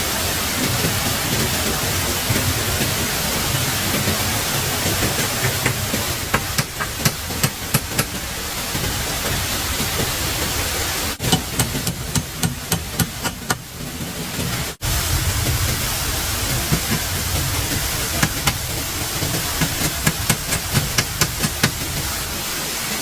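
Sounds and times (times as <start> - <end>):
steady rushing noise: 0.0 - 23.0
sharp knocks: 5.1 - 8.2, 11.2 - 14.6, 18.2 - 18.7, 19.6 - 21.9.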